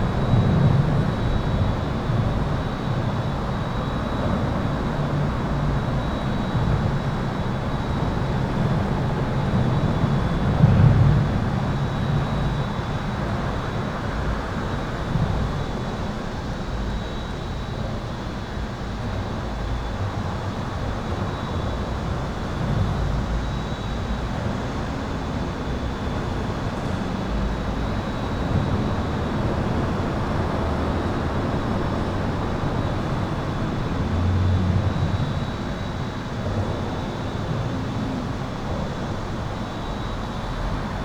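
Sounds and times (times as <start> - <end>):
heavy vehicles rumbling: 24.3 - 41.0
highway traffic rushing: 26.9 - 39.6.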